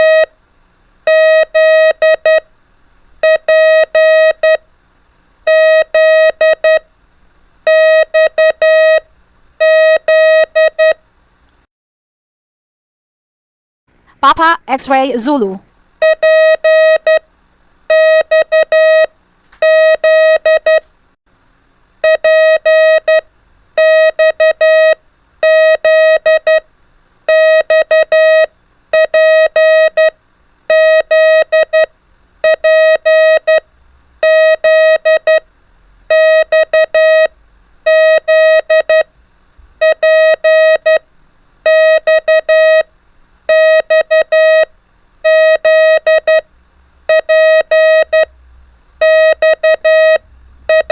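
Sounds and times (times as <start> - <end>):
morse code beeps: 49.0 - 50.9.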